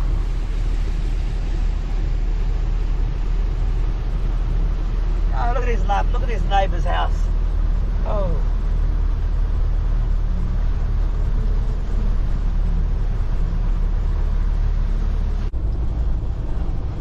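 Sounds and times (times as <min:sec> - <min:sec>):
car engine and road noise: 0:00.0 - 0:17.0.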